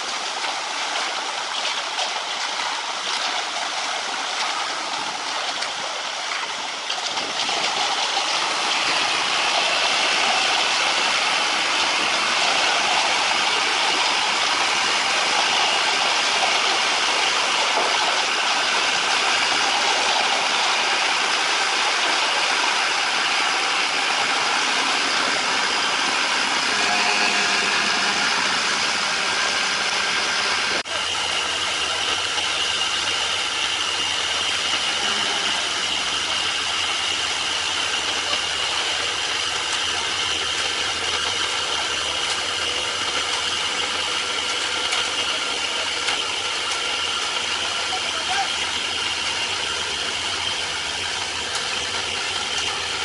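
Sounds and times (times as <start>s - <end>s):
heavy machinery engine running: 0.0s - 53.0s
high whine: 8.3s - 39.1s.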